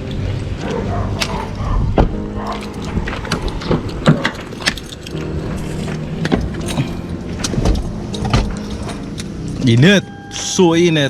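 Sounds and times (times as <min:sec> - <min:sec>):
keys clicking and rattling: 0:02.4 - 0:09.2.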